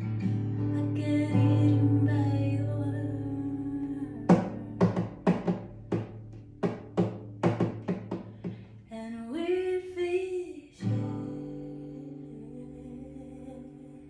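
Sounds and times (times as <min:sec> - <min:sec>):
guitar: 0:00.0 - 0:14.0
person singing: 0:00.8 - 0:05.4
steady drum beat: 0:04.4 - 0:08.6.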